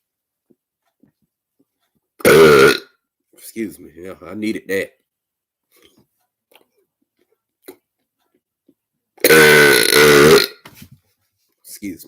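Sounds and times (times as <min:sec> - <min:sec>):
man burping loudly: 0:02.2 - 0:02.9, 0:09.2 - 0:10.6.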